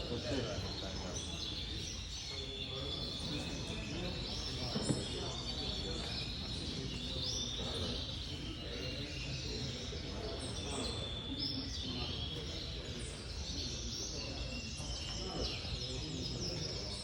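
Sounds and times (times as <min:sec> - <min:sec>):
canaries chirping: 0:00.0 - 0:17.0.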